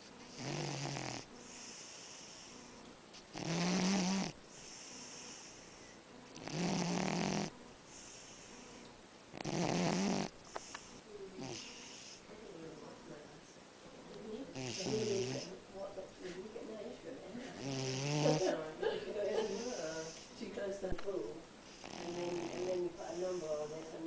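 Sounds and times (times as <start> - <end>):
dog snoring: 0.0 - 12.2, 14.5 - 15.5, 17.5 - 18.6, 19.4 - 20.3, 21.6 - 24.0
dog breathing: 0.2 - 12.3, 14.5 - 15.6, 17.3 - 20.4, 21.6 - 24.0.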